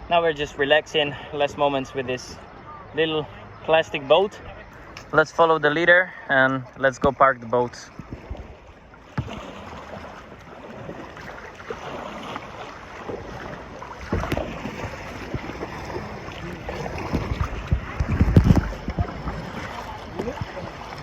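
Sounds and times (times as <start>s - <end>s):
water splashing around a kayak: 0.0s - 21.0s
wind buffeting microphone: 11.9s - 21.0s.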